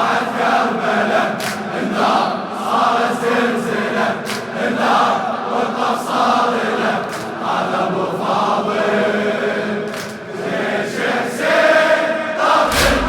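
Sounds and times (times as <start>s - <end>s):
congregation chanting in unison: 0.0s - 13.0s
sharp thump with low rumble: 12.7s - 13.0s.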